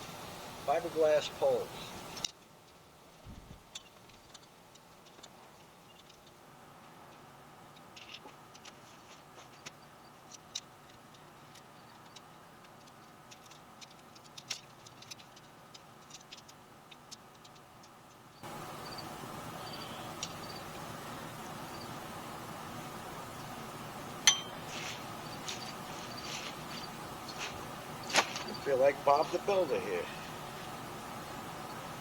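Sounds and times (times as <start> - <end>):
tent pole sections clicking: 2.1 - 6.4, 7.1 - 18.6, 24.3 - 30.8.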